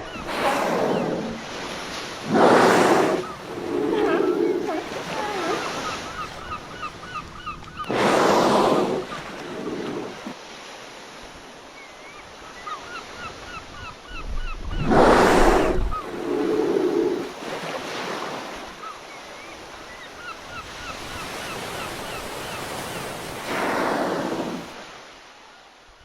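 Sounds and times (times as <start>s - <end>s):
sea waves washing: 0.0s - 11.0s, 14.6s - 18.8s, 20.8s - 25.3s.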